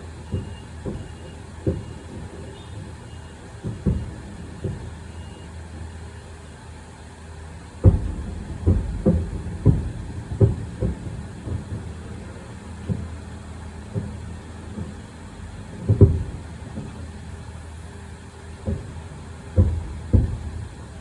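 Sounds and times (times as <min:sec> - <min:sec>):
fireworks booming: 0:00.0 - 0:21.0
steady low rumble: 0:07.7 - 0:21.0.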